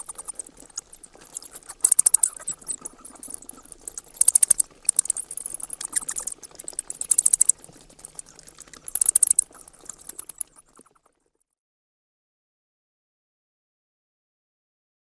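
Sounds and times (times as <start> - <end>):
bats chittering: 0.0 - 10.6.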